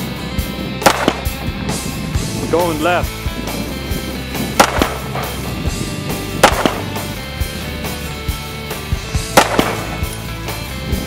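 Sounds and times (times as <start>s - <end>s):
background music: 0.0s - 11.0s
gunshots: 0.8s - 1.4s, 4.5s - 5.5s, 6.2s - 7.2s, 9.2s - 10.2s.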